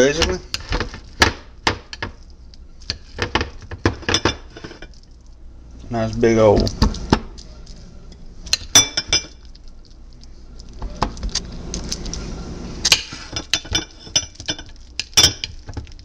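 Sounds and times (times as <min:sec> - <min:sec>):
spoon clinking against a dish: 0:08.5 - 0:09.4, 0:13.4 - 0:15.6.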